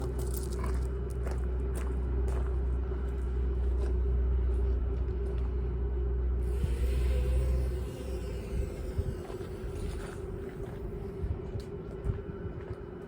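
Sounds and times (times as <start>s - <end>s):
toy drone motors humming: 6.4s - 11.4s
wind rumbling on microphone: 6.4s - 13.0s.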